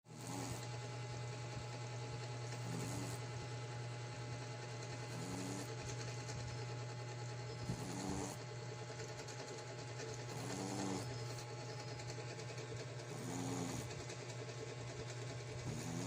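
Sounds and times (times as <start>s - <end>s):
dog snoring: 0.1s - 0.8s, 2.4s - 3.4s, 4.8s - 6.6s, 7.4s - 9.4s, 10.0s - 11.5s, 13.0s - 14.1s, 15.5s - 16.0s
steady low hum: 0.1s - 16.0s.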